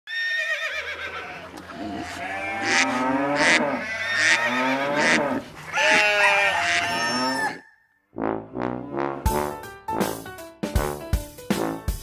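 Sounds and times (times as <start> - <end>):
animals bleating: 0.1 - 7.6
cattle mooing: 1.0 - 7.6.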